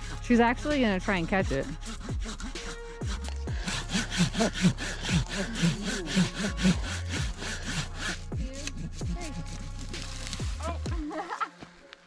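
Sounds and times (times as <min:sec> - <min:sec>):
hand saw cutting wood: 0:00.0 - 0:08.2.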